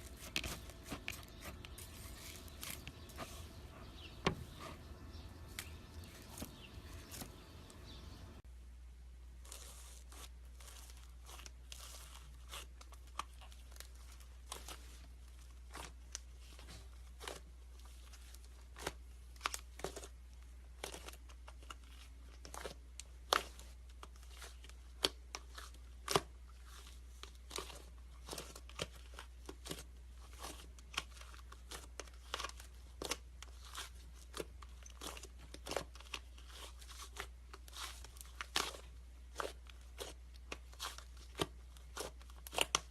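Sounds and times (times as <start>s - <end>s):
steady low hum: 0.0s - 9.2s.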